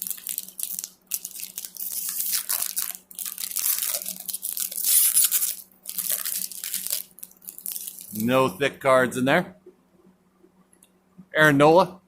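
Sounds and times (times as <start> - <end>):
plastic wrapper tearing and crumpling: 0.0 - 8.4.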